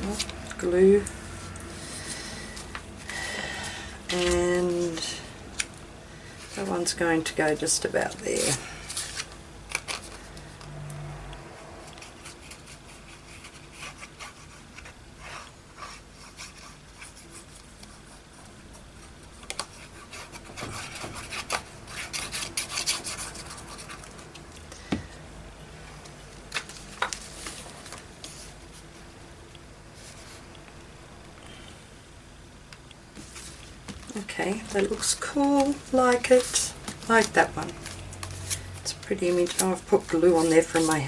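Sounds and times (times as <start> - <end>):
hands rubbing paper: 12.0 - 24.5, 33.2 - 41.0.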